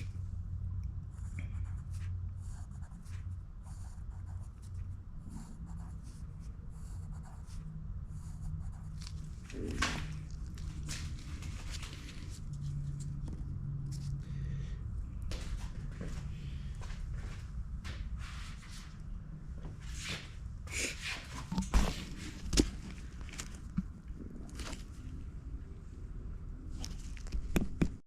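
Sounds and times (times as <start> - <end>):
low hum: 0.0 - 28.0
pen scratching on paper: 1.2 - 9.8.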